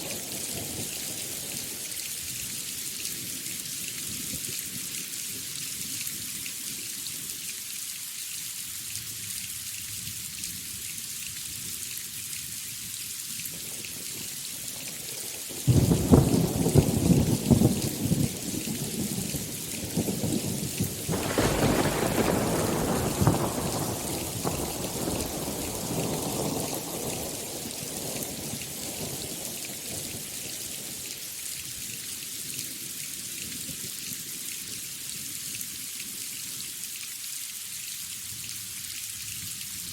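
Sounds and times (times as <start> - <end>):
steady rain hissing: 0.0 - 39.9
thunder crackling and rumbling: 15.7 - 29.2.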